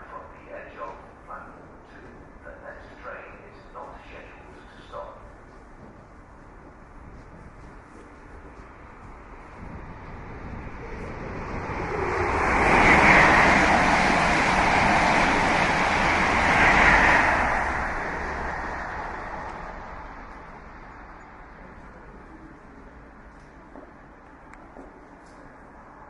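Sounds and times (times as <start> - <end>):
train passing: 0.0 - 26.0.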